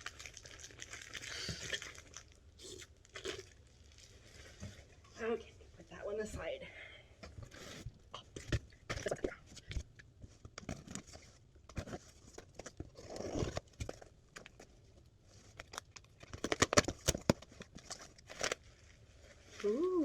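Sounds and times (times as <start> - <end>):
packing material crinkling and tearing: 0.0 - 4.6, 10.6 - 19.7.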